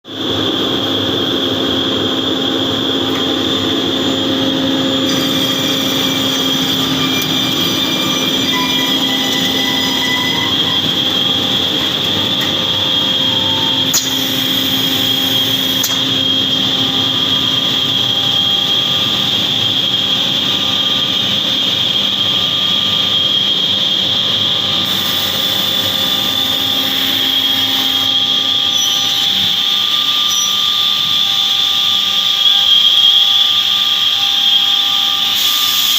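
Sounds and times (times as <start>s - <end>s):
machine hum and whine: 0.1s - 35.9s.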